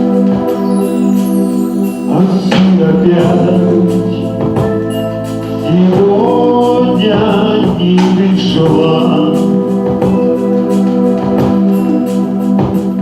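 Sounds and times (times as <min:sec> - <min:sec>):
person singing: 0:00.0 - 0:13.0
pop song with keyboard chords: 0:00.0 - 0:13.0.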